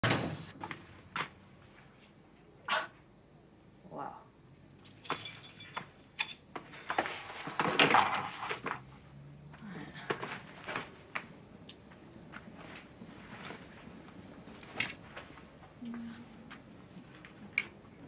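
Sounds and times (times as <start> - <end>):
metallic jangling and clinking: 4.8 - 6.4.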